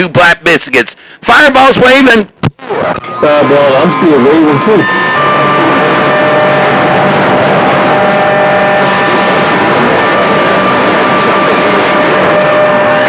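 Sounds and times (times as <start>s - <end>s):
radio static hiss: 1.3s - 4.7s.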